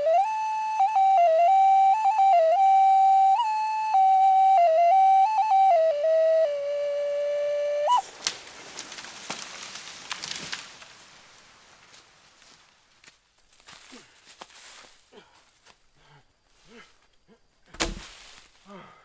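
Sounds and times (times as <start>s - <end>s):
flute playing slow melody: 0.0s - 8.1s
faint crackling: 7.8s - 18.8s.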